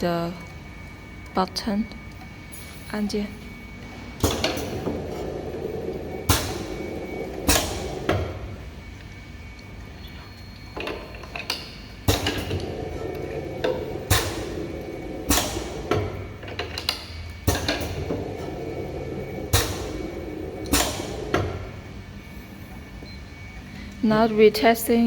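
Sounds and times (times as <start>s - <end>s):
filling machine heads clacking: 3.9s - 8.6s, 10.7s - 22.8s.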